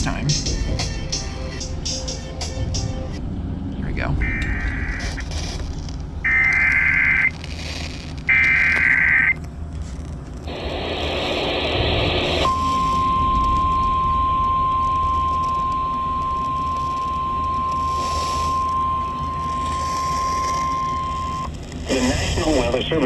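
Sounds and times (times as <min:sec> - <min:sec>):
steady warning alarm tone: 0:04.1 - 0:05.2, 0:06.2 - 0:07.3, 0:08.3 - 0:09.4, 0:10.5 - 0:21.5
digital data noise burst: 0:04.2 - 0:05.6, 0:06.3 - 0:09.4, 0:16.8 - 0:23.0.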